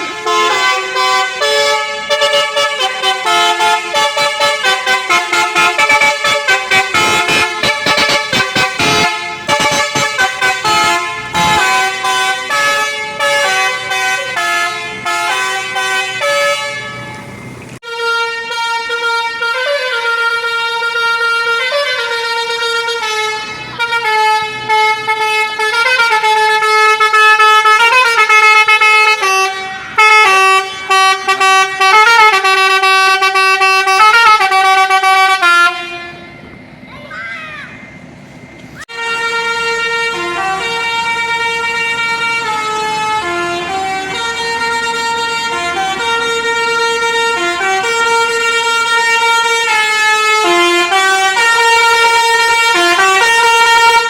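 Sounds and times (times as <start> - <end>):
bus multi-tone horn melody: 0.0 - 36.9, 38.0 - 54.0.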